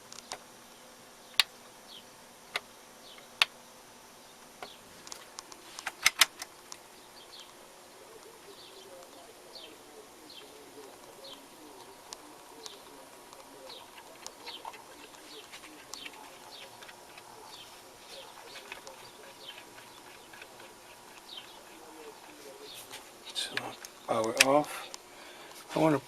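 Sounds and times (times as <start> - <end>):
turntable hum: 0.0 - 26.0.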